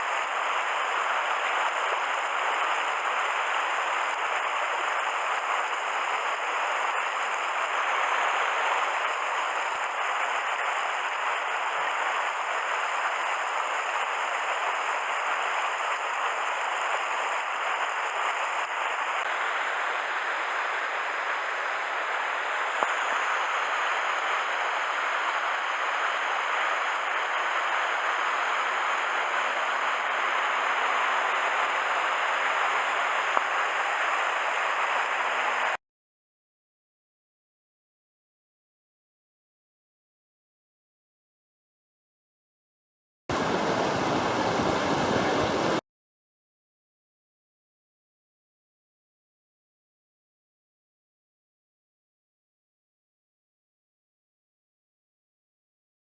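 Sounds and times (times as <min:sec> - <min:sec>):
stream rushing over rocks: 0:00.0 - 0:35.8, 0:43.3 - 0:45.8.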